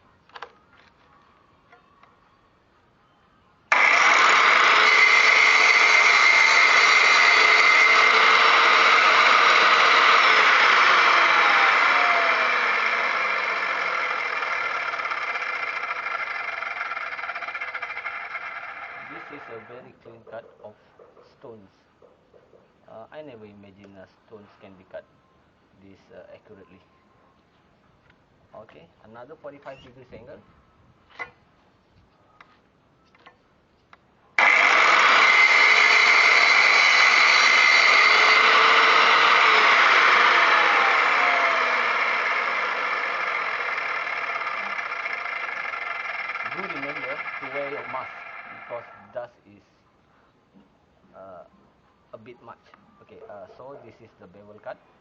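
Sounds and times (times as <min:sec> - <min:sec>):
saw motor spinning down: 0:03.7 - 0:19.9, 0:34.4 - 0:49.2.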